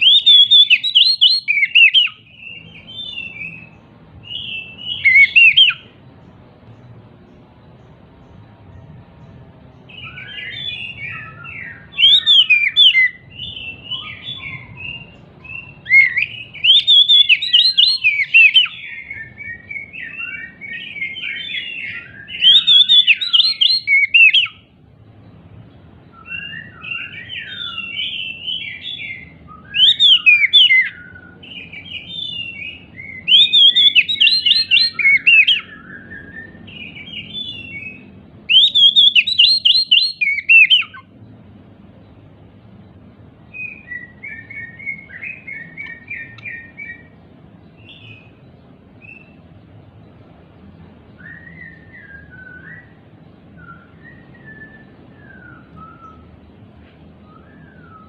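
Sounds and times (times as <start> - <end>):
bird singing whistles and chirps: 0.0 - 6.0, 9.8 - 24.7, 26.0 - 41.1, 42.8 - 49.5, 51.1 - 58.0
faint low rumble: 2.2 - 12.2, 40.8 - 58.0.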